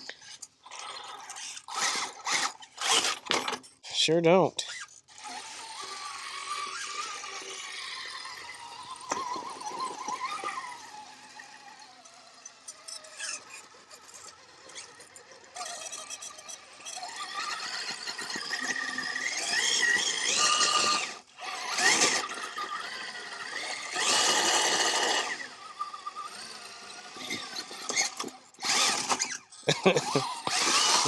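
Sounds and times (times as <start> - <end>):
rc car electric motor whining: 0.0 - 3.7, 4.6 - 31.0.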